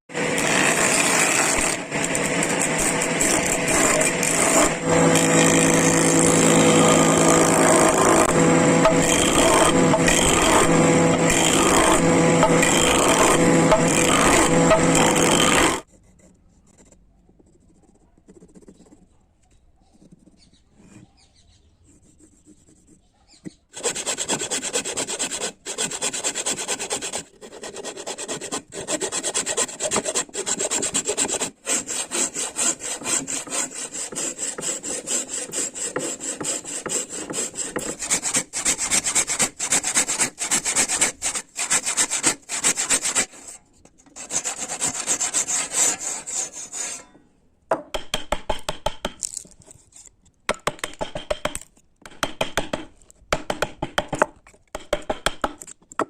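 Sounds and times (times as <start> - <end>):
rasp filing wood: 0.2 - 15.9, 23.8 - 47.1.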